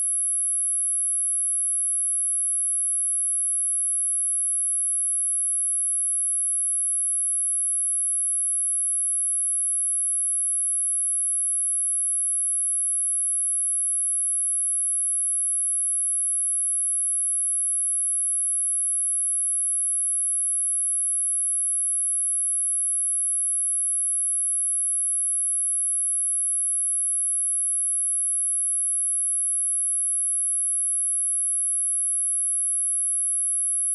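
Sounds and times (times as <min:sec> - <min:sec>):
high-pitched sine test tone: 0:21.6 - 0:33.9.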